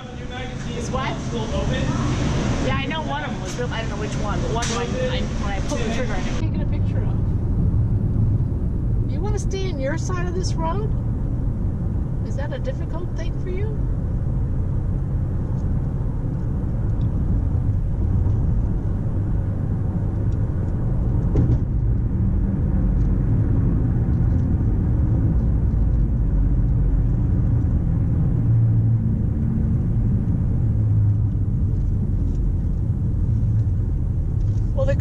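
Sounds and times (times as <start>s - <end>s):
car cabin road rumble: 0.0s - 35.0s.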